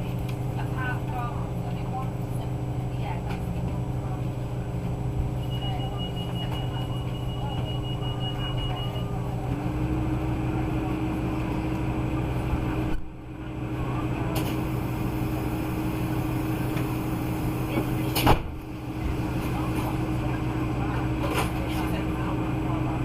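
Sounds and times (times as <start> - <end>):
diesel engine low hum: 0.0 - 23.0.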